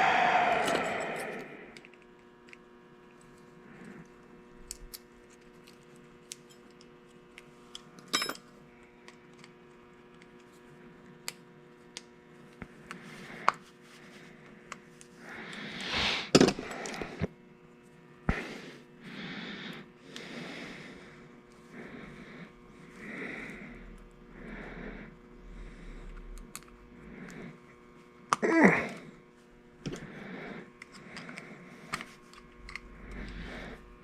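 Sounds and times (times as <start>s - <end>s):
faint steady hum: 0.0s - 2.0s, 10.2s - 34.0s.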